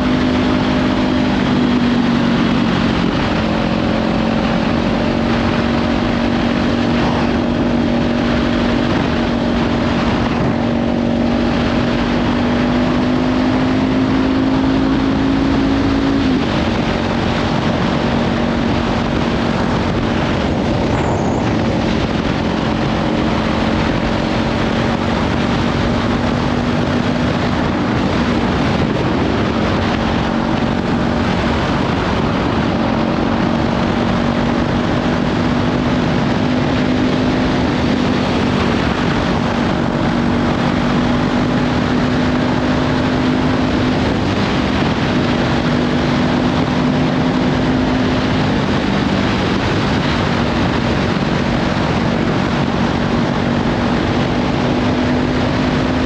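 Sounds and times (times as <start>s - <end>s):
motorcycle engine running: 0.0s - 56.0s
wind noise on microphone: 0.0s - 56.0s.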